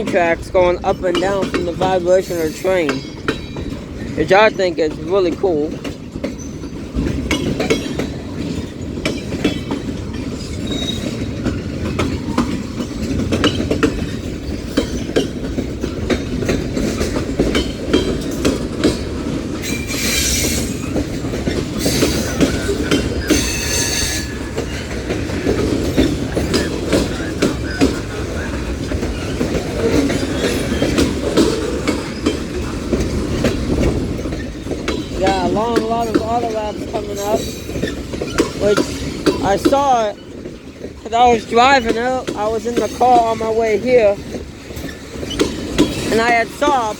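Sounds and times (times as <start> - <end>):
train wheels rumbling and clicking: 0.0 - 46.9
high-pitched wheel squeals: 21.8 - 24.8.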